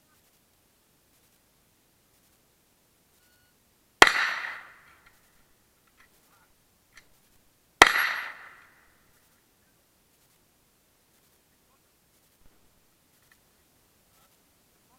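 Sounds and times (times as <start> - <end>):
rifle shots with echo: 4.0 - 5.1, 7.8 - 8.8.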